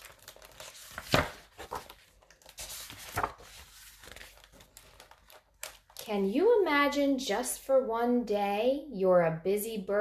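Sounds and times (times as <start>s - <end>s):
book pages turning: 0.0s - 6.3s.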